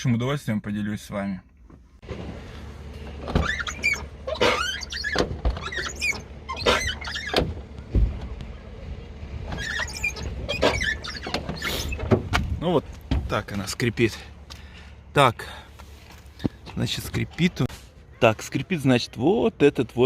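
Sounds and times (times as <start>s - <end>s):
car door check strap squeaking: 3.1s - 7.8s, 9.5s - 12.5s.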